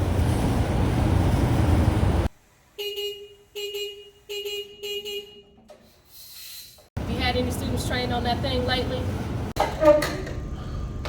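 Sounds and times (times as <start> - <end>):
forklift horn beeps: 2.8 - 5.7.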